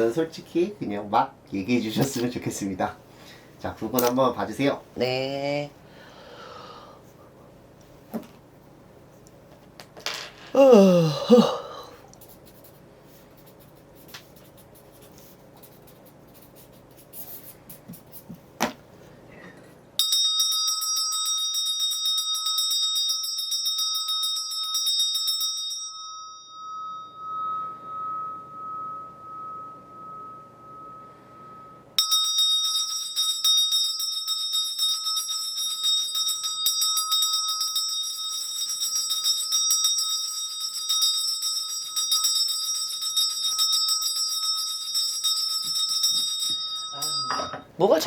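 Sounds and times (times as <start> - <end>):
ritual bells jingling: 20.0 - 48.0.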